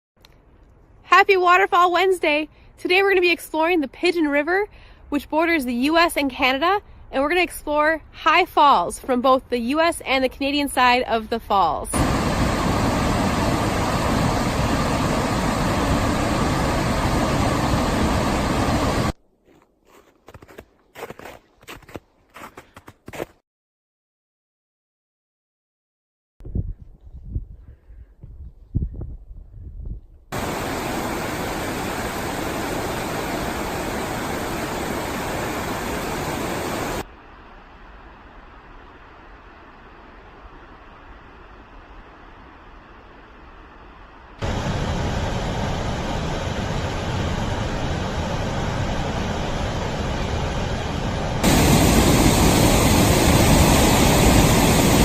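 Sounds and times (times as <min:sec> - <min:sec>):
waterfall roar: 0:12.0 - 0:19.2, 0:30.4 - 0:37.0, 0:44.4 - 0:55.0.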